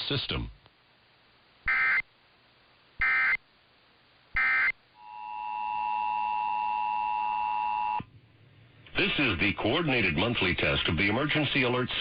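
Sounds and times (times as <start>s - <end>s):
digital data tone bursts: 1.7s - 2.0s, 3.0s - 3.4s, 4.4s - 8.0s.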